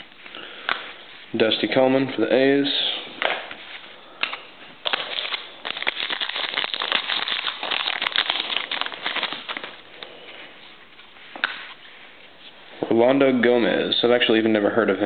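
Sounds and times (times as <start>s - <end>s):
card pack wrapper crackling: 4.2s - 9.9s.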